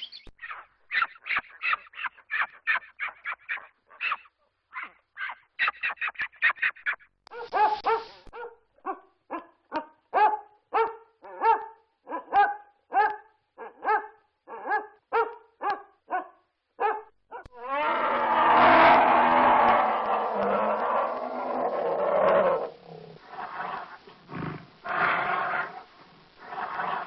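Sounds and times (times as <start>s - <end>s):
dog barking: 7.3s - 17.5s.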